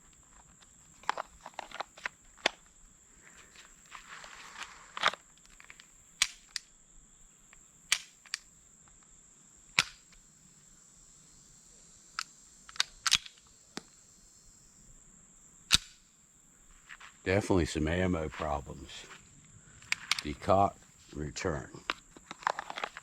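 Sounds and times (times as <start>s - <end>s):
light sharp cracks: 4.5s - 6.8s, 7.5s - 9.1s, 9.7s - 10.2s, 12.1s - 14.0s, 15.7s - 16.2s, 19.8s - 20.6s
man talking: 17.3s - 19.1s, 20.2s - 21.9s.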